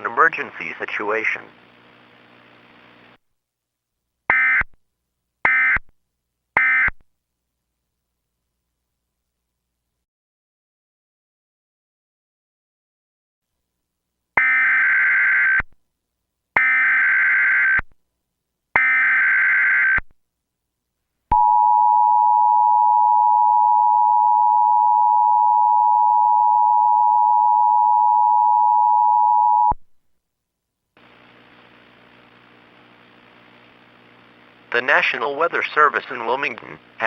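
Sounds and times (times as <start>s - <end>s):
faint hiss with low hum: 0.0s - 3.3s, 30.9s - 37.0s.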